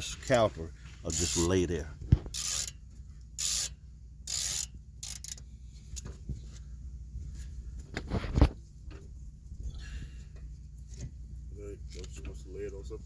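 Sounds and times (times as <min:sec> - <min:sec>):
ratchet wrench clicking: 0:01.1 - 0:01.6, 0:02.3 - 0:02.8, 0:03.4 - 0:06.1.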